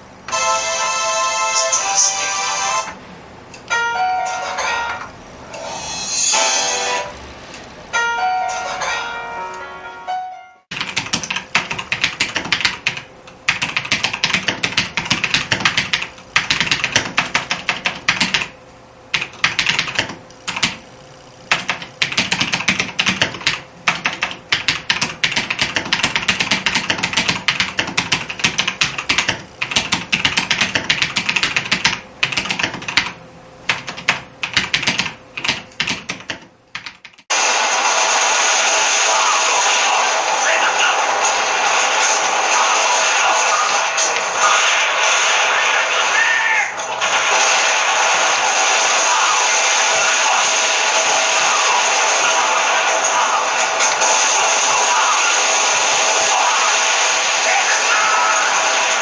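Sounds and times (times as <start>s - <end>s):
fast typing on mechanical keyboard: 10.7s - 18.5s, 19.1s - 20.8s, 21.5s - 37.3s.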